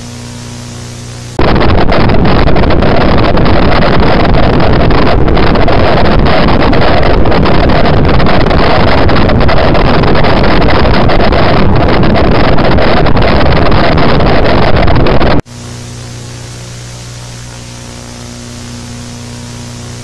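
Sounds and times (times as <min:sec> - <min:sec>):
loud dense rumbling: 0:00.0 - 0:15.5
low hum with hiss: 0:00.0 - 0:20.0.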